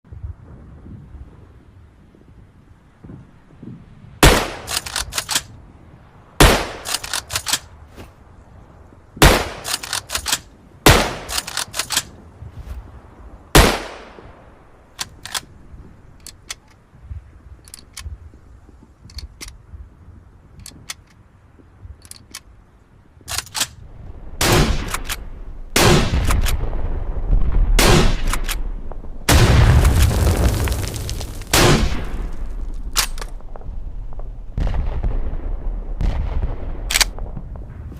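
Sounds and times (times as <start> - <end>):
rifle shots: 4.2 - 5.4, 6.4 - 7.6, 9.2 - 12.1, 13.6 - 14.2, 25.8 - 26.6, 27.8 - 28.6, 29.3 - 33.2
smaller cracks: 6.4 - 7.7, 27.8 - 34.3
low rumble: 23.8 - 37.9.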